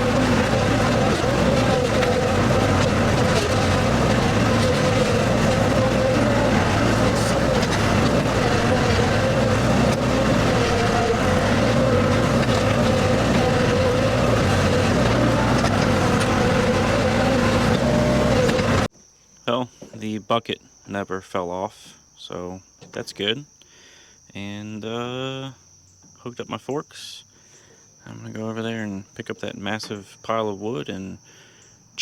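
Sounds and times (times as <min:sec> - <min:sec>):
skid steer engine running: 0:00.0 - 0:18.9.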